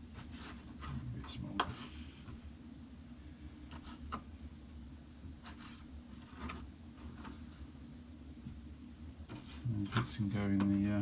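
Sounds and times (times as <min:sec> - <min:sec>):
low steady hum: 0:00.0 - 0:11.0
knife tapping and scraping board: 0:09.3 - 0:10.8.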